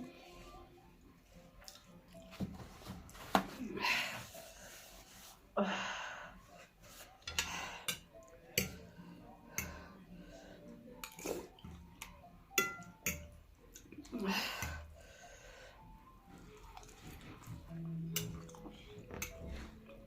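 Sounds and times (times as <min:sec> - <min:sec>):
cutlery clinking on bowl: 0:07.2 - 0:08.8, 0:11.0 - 0:13.4, 0:18.1 - 0:19.8.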